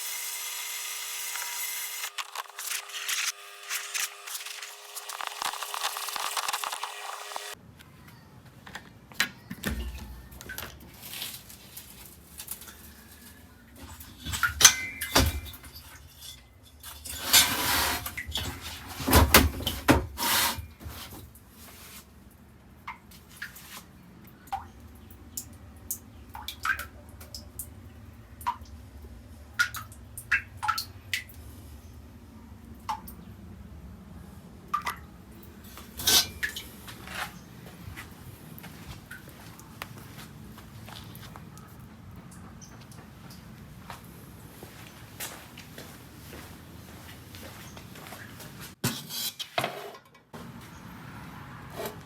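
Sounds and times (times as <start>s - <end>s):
hissing spray: 2.5s - 7.6s
water dripping: 22.8s - 31.4s, 34.7s - 35.5s, 42.2s - 43.6s.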